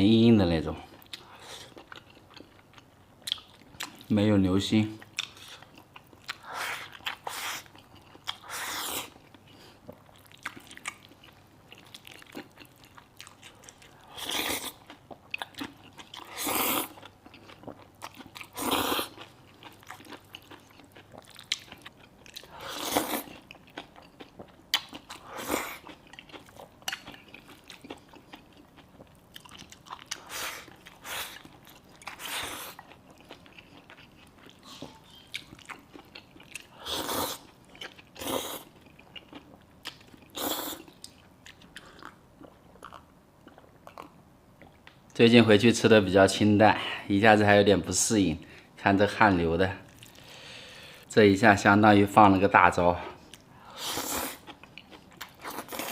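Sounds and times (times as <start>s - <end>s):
person chewing food: 0.9s - 4.1s, 5.0s - 45.0s, 49.9s - 51.0s, 53.0s - 55.9s.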